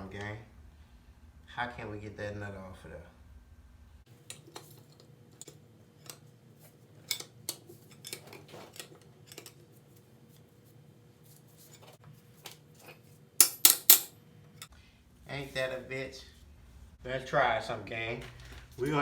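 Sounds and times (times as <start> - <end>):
metal tools clicking on engine: 13.4 - 14.1
sharp metal clanks: 13.4 - 14.1.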